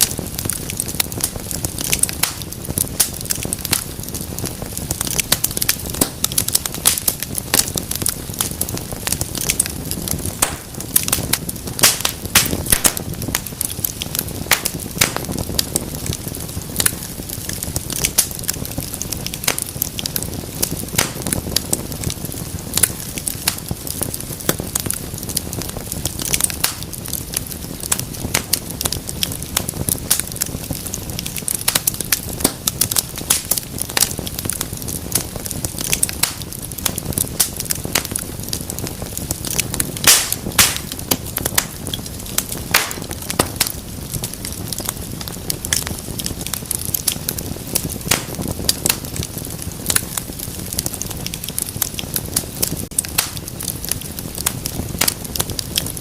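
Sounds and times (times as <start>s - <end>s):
fire flames rumbling: 0.0s - 56.0s
loud pop from fire: 0.0s - 56.0s
wood fire crackling and snapping: 0.0s - 56.0s.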